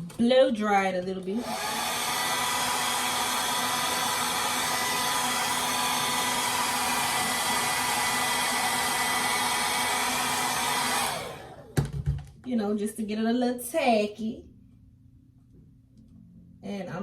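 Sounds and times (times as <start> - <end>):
hair dryer blowing: 1.3 - 12.0.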